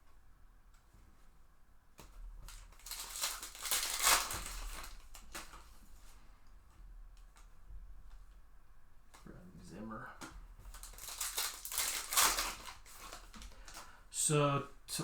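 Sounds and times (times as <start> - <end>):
foil wrapper crinkling and tearing: 2.4 - 5.8, 10.6 - 14.0.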